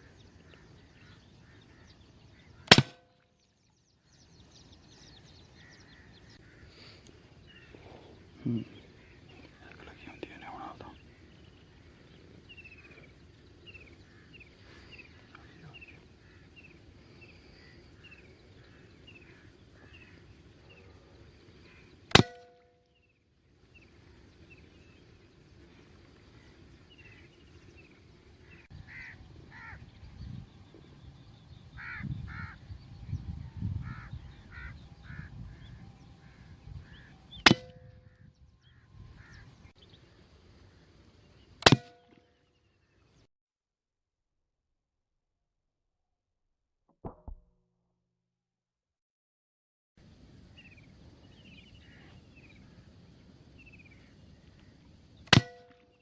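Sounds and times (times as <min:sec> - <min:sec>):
bird chirping: 0:00.0 - 0:43.3, 0:50.5 - 0:56.0
air gun shots: 0:02.6 - 0:03.1, 0:22.1 - 0:22.6, 0:37.4 - 0:37.9, 0:41.6 - 0:42.2.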